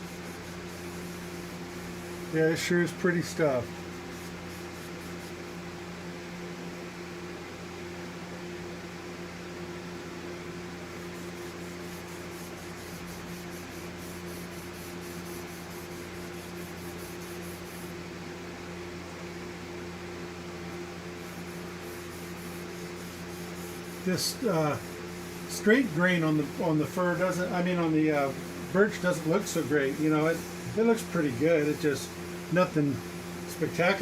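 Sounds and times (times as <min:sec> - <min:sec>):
electric fan humming: 0:00.0 - 0:34.0.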